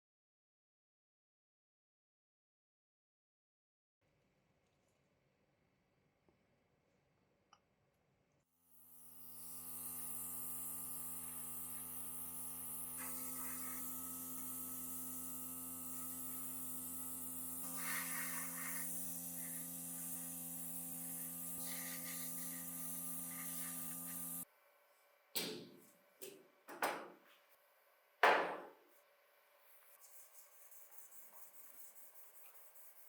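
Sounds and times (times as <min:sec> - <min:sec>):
small electric motor whirring: 0:08.7 - 0:24.5
short scratchy bursts: 0:11.2 - 0:24.4.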